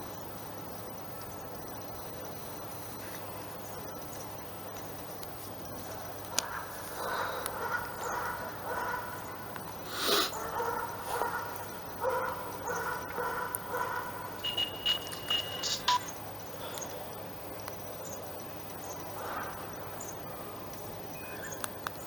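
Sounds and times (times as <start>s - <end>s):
electronic ringtone notes: 14.4s - 16.0s.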